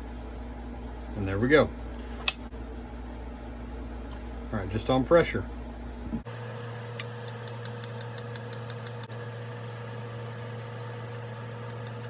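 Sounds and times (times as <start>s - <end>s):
small motor humming: 6.3s - 12.0s.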